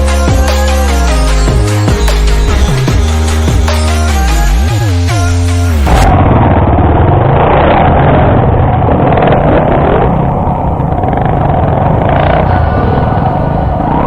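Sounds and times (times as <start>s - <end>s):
music: 0.0s - 6.1s
dirt bike engine rumble: 5.8s - 14.0s.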